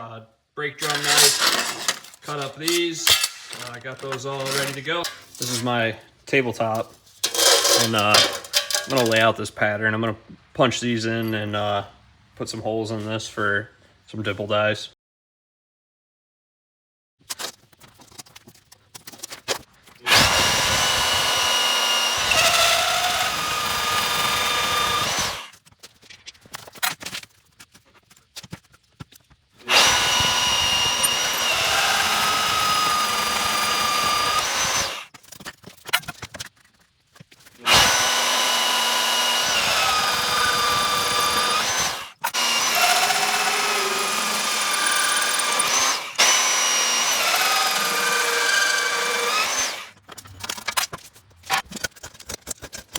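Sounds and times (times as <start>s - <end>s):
electric drill whining through metal: 0.8s - 5.8s, 7.2s - 9.2s, 20.1s - 25.5s, 29.7s - 35.1s, 37.6s - 50.0s.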